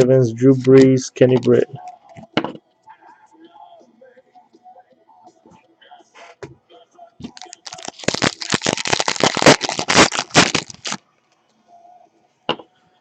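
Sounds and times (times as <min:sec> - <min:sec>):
trading cards crinkling: 0:07.2 - 0:11.0.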